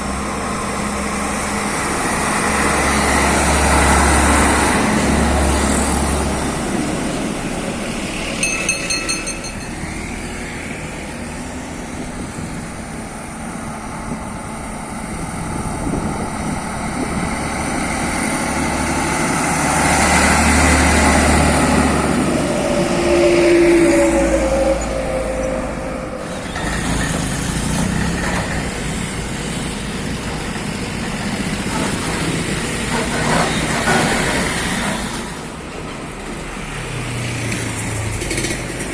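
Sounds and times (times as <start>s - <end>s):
trucks driving past: 0.0s - 38.9s.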